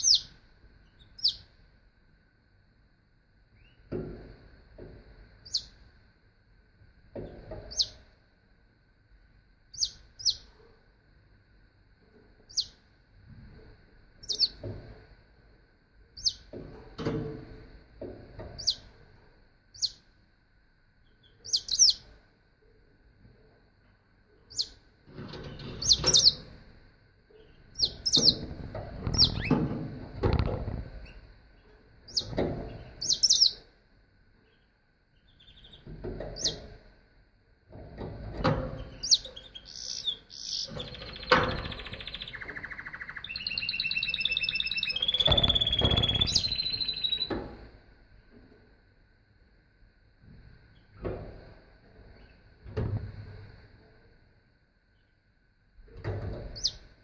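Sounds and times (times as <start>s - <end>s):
canary chirping: 0.0s - 1.5s, 3.6s - 3.8s, 5.4s - 5.8s, 7.2s - 8.0s, 9.7s - 10.5s, 12.5s - 12.8s, 14.2s - 14.7s, 16.2s - 16.6s, 18.4s - 18.9s, 19.7s - 20.0s, 21.0s - 22.1s, 24.5s - 26.6s, 27.4s - 33.6s, 34.4s - 36.8s, 38.8s - 47.4s, 56.5s - 56.9s
faint steady whine: 0.0s - 57.0s.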